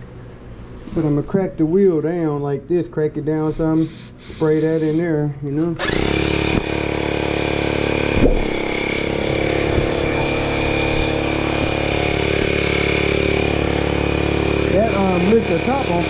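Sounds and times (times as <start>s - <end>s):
air compressor running: 3.4s - 16.0s.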